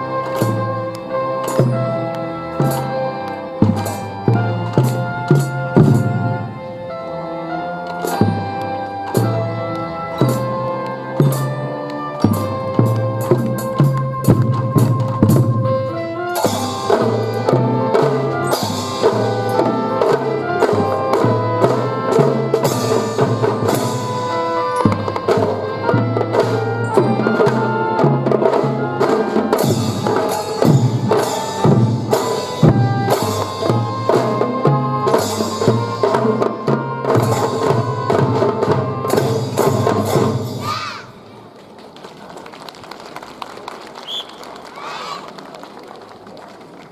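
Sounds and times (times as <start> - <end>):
drums beating: 0.0 - 6.6, 12.2 - 41.0
fife melody: 0.0 - 40.5.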